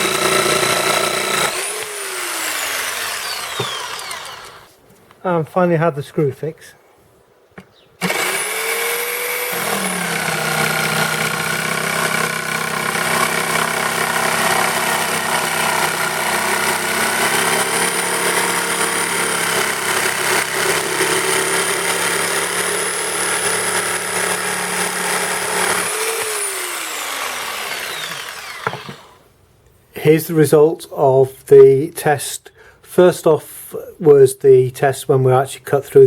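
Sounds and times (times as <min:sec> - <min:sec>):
jigsaw sawing through wood: 0:00.0 - 0:04.7, 0:08.0 - 0:29.2.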